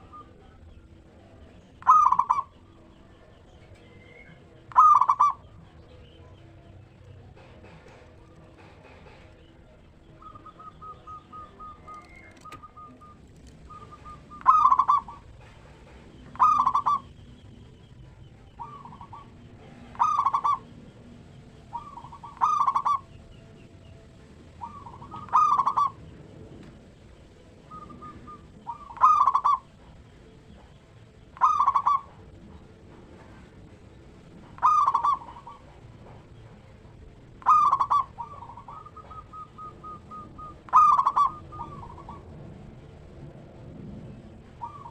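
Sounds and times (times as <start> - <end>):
dove cooing: 0.0 - 6.1, 6.8 - 23.4, 24.1 - 43.3, 44.1 - 44.9.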